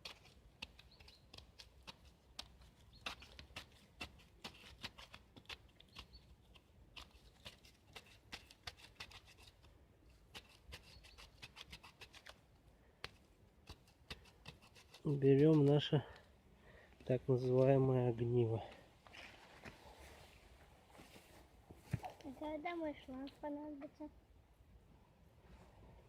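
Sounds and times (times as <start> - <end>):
knife scraping bark: 0.0 - 6.2, 6.9 - 9.7, 10.3 - 12.4, 13.6 - 15.9.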